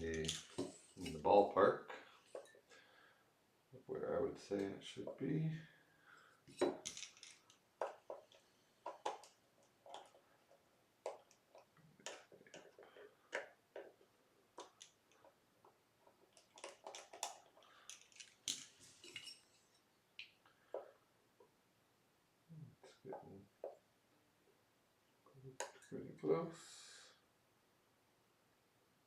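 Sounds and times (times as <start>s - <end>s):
hand tools clicking and scraping: 0.0s - 1.2s, 16.0s - 19.7s.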